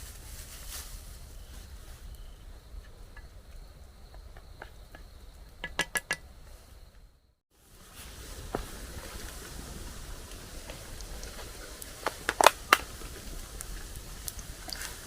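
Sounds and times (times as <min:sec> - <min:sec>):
faint high insect-like tone: 0:00.3 - 0:07.4.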